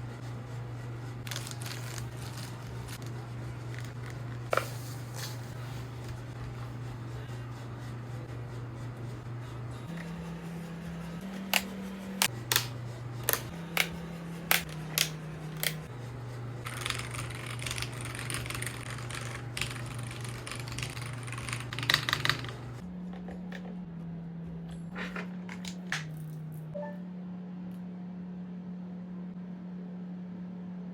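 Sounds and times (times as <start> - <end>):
mechanical keyboard typing: 16.7 - 22.6.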